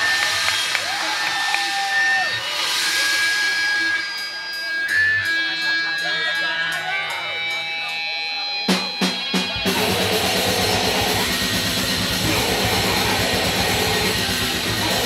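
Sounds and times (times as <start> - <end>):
ringing electric guitar tones: 2.4 - 15.0
heavy metal band playing: 8.5 - 15.0.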